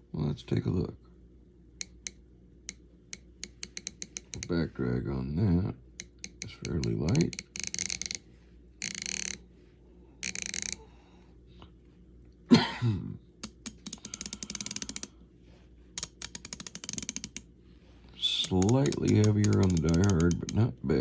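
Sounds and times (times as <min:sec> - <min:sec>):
hand ratchet clicking: 0:01.8 - 0:04.5, 0:06.0 - 0:08.2, 0:08.8 - 0:09.4, 0:10.2 - 0:10.8, 0:13.4 - 0:15.1, 0:16.0 - 0:17.4, 0:18.3 - 0:20.6.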